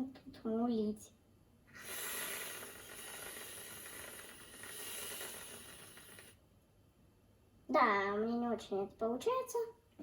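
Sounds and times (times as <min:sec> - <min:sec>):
aerosol can hissing: 0:01.8 - 0:06.4.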